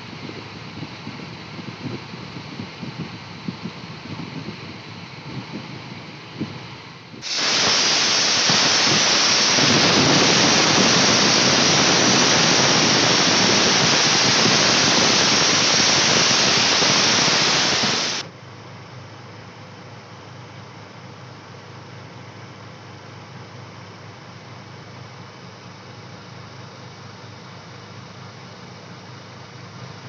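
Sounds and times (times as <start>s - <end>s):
heavy rain pouring: 7.2s - 18.2s.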